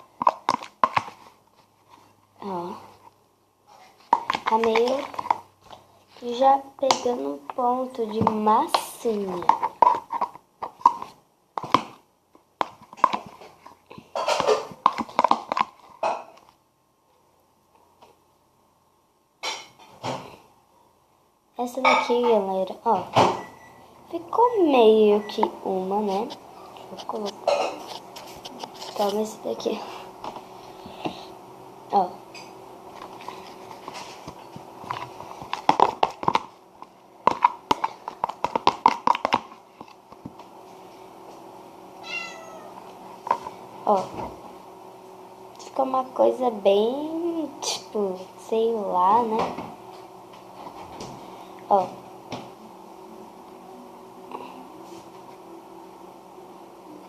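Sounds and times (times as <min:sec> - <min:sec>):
slime squishing with sticky pops: 0:33.0 - 0:40.4.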